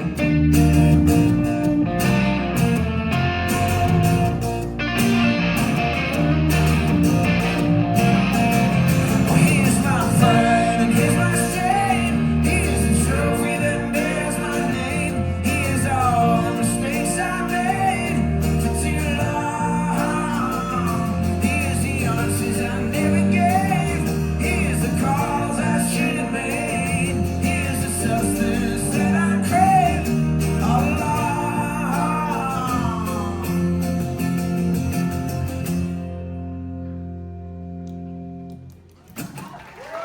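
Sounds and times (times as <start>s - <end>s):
live folk-rock band: 0.0s - 40.0s
wordless singing: 9.2s - 33.8s.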